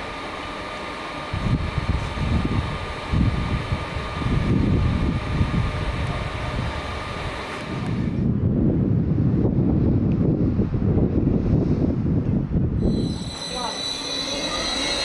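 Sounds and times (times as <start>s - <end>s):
mechanical hum with whine: 0.0s - 8.4s
wind buffeting microphone: 1.3s - 13.4s.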